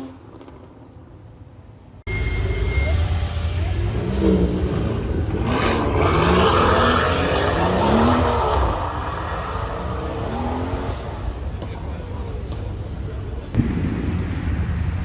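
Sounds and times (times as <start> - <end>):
car engine accelerating: 2.1 - 11.4.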